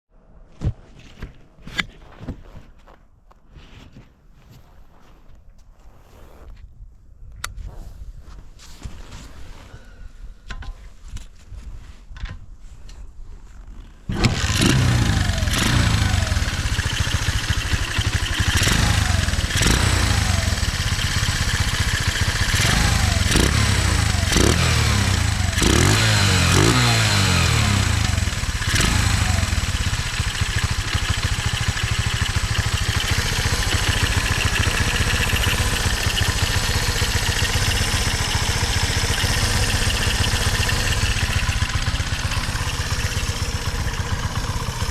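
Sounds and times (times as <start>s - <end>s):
motorcycle engine revving and idling: 13.6s - 44.9s.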